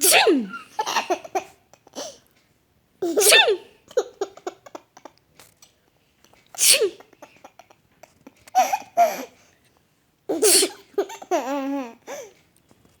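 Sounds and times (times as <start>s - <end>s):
person sneezing: 0.0s - 0.7s, 3.1s - 3.7s, 6.6s - 7.0s, 10.3s - 10.9s
baby laughing: 0.6s - 2.2s, 3.0s - 5.2s, 6.8s - 9.4s, 10.3s - 12.3s.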